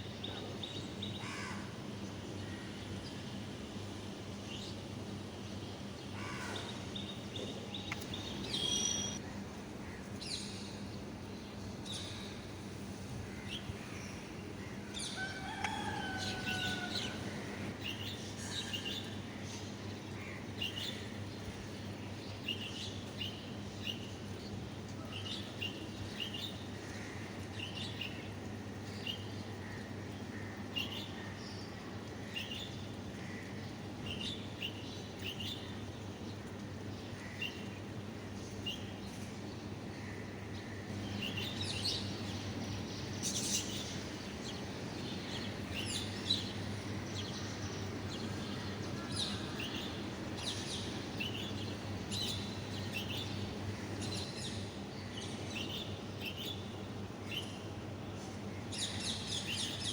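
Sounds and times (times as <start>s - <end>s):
birds chirping: 5.8s - 9.2s, 40.5s - 59.9s.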